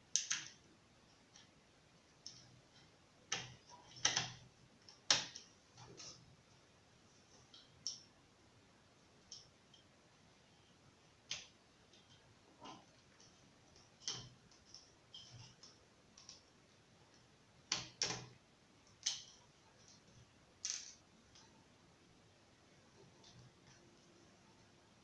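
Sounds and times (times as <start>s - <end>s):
hands clicking and tapping on laptop: 0.1s - 0.6s, 2.2s - 6.2s, 11.2s - 16.5s, 17.1s - 21.5s.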